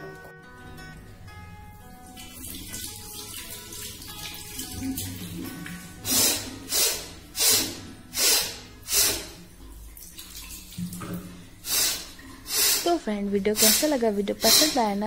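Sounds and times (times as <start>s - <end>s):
water splashing on face: 2.2s - 13.0s.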